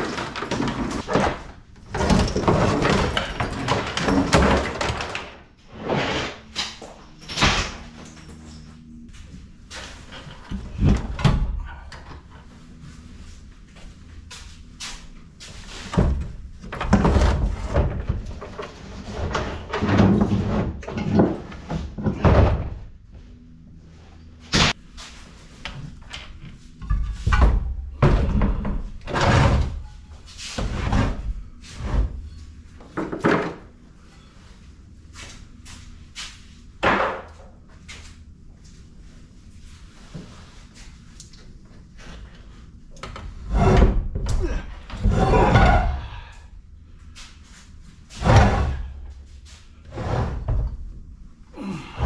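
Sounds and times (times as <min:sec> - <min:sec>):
scrap metal clunks and bangs: 0:00.0 - 0:08.9, 0:15.0 - 0:23.0, 0:26.1 - 0:33.8, 0:43.1 - 0:46.4, 0:48.1 - 0:50.9.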